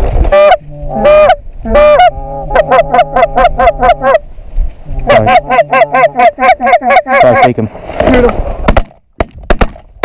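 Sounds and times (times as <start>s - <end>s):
geese honking: 0.3s - 4.2s, 4.9s - 7.6s.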